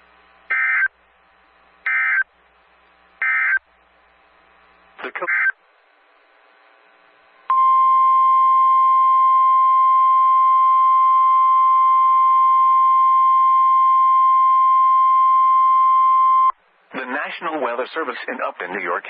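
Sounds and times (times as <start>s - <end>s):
steady loud alarm tone: 0.5s - 0.9s, 1.9s - 2.2s, 3.2s - 3.6s.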